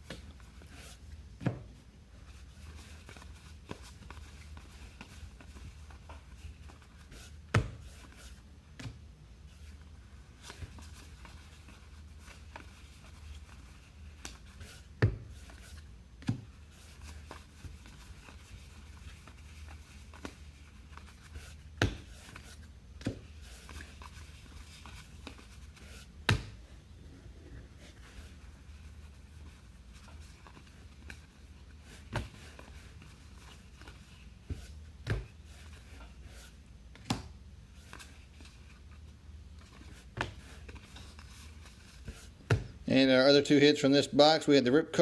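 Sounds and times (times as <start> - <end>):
low steady hum: 0.0 - 45.0
cards rubbing and sliding: 9.6 - 26.6.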